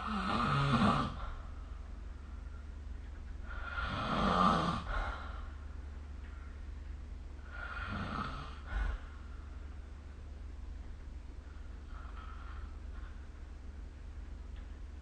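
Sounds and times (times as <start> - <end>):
person snoring: 0.0 - 1.2.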